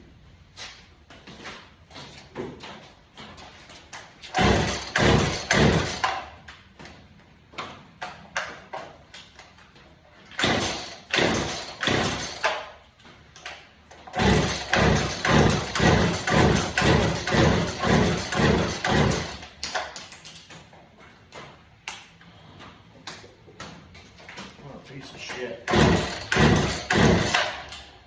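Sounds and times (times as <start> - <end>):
chainsaw starter cord pulls: 3.9 - 6.4, 10.3 - 12.8, 13.4 - 20.5, 25.2 - 28.0.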